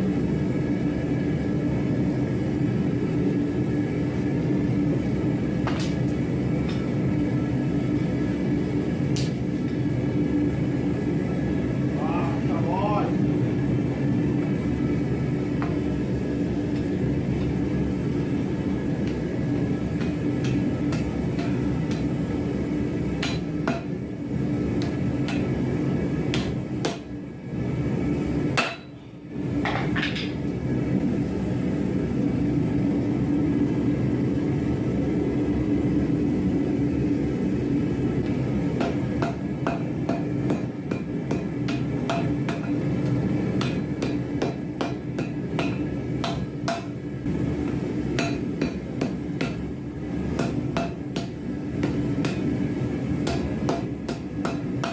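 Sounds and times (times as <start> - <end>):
hammer blows on hot steel: 15.4 - 27.2, 38.2 - 54.9.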